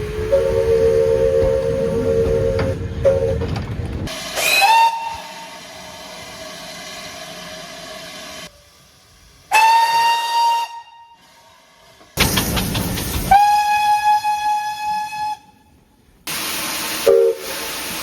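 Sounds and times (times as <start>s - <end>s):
low chord-like train whistle: 0.0s - 3.4s, 4.4s - 6.0s, 9.5s - 11.5s, 13.3s - 15.8s, 17.0s - 17.5s
shrill steam whistle blasts: 0.0s - 3.4s, 4.3s - 6.0s, 9.5s - 11.6s, 13.2s - 15.8s, 16.8s - 18.0s
steam hiss: 4.1s - 10.5s, 11.2s - 15.4s, 16.3s - 18.0s.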